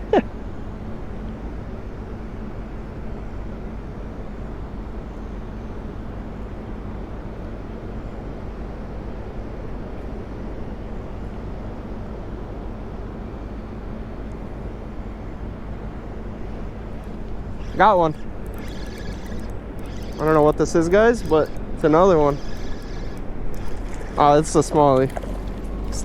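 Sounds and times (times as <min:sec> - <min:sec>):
faint low hum: 0:14.3 - 0:26.0
water roaring through spillway: 0:20.2 - 0:26.0.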